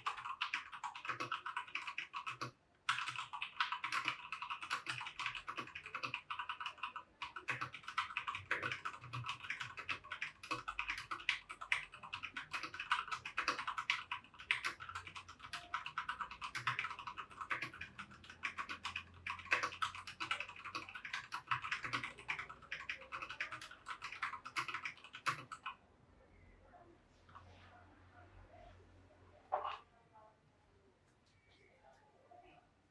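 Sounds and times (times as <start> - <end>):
fast mechanical keyboard typing: 0.0 - 25.8.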